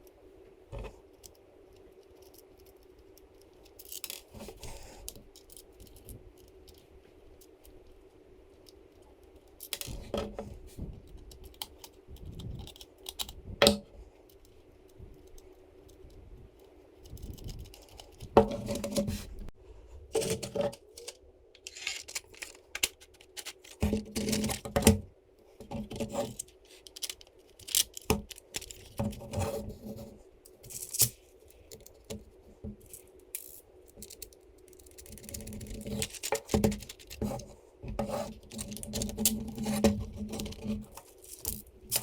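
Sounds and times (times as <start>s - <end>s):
faint steady hum: 0.0s - 42.0s
plastic and metal parts clicking: 20.2s - 25.0s, 25.7s - 29.4s, 32.8s - 37.3s.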